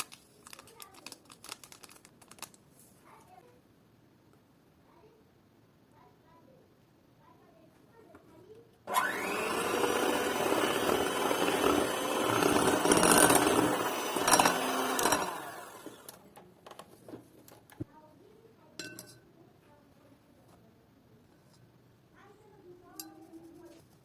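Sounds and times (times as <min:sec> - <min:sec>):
electric mixer motor whine: 0:08.9 - 0:16.2.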